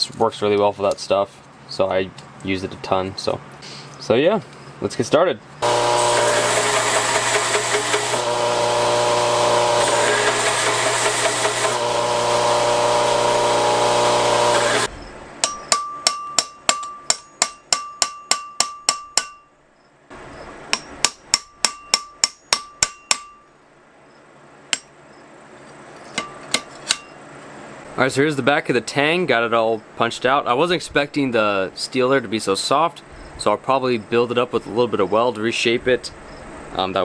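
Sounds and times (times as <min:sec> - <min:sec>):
power tool running: 0:05.6 - 0:14.9
hammer striking steel punch: 0:14.6 - 0:19.5, 0:20.7 - 0:23.5, 0:24.7 - 0:24.9.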